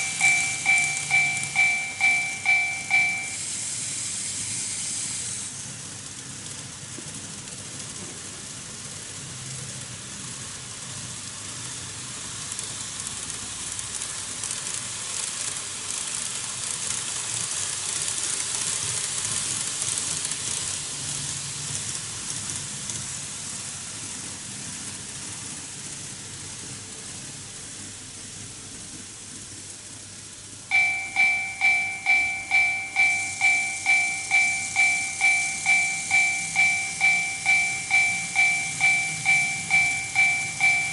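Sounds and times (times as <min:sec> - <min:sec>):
two-tone level crossing bell: 0:00.0 - 0:03.5, 0:30.7 - 0:40.9
model train wheels and motors hissing: 0:00.0 - 0:40.9.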